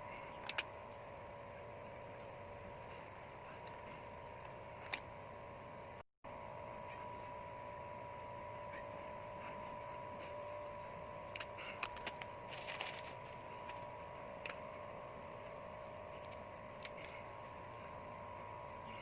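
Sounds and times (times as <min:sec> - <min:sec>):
steady two-tone hum: 0:00.0 - 0:19.0
hands rustling craft materials: 0:11.2 - 0:13.9.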